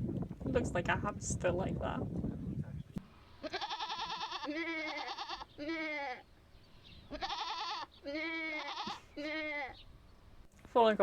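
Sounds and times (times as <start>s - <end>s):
goats bleating: 3.4s - 6.2s, 7.1s - 9.8s.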